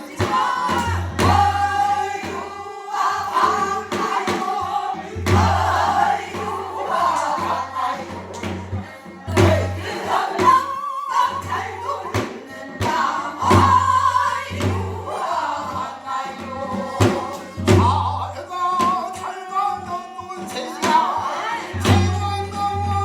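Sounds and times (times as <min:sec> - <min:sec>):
person singing with vibrato: 0:00.0 - 0:23.0
low drum strokes: 0:03.2 - 0:10.6.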